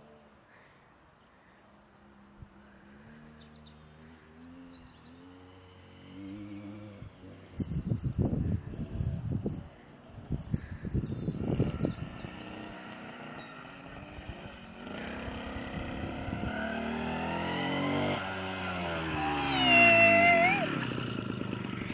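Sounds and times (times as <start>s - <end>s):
scooter engine revving: 11.2s - 21.9s
wavering high-pitched squeal: 18.8s - 21.1s.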